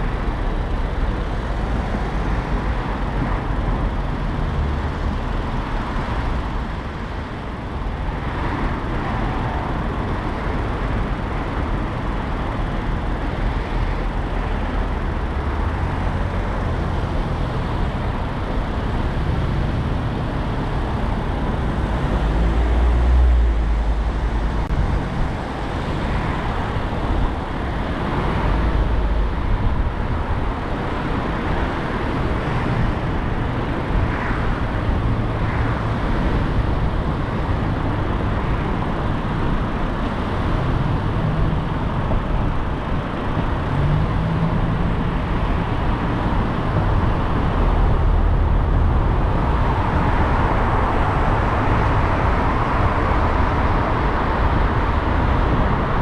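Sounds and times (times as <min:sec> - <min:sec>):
car driving in traffic: 0:00.0 - 0:56.0.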